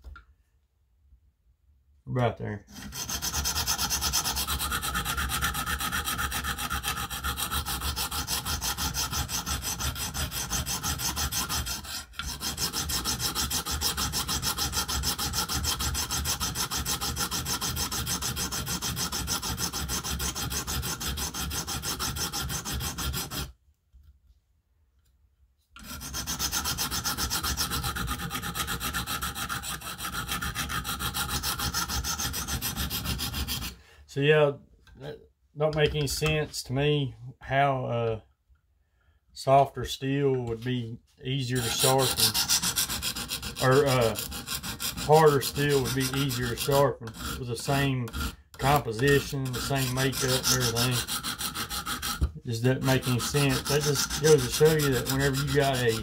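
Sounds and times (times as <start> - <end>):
sharpening stone rubbing knife edge: 52.9 - 56.0.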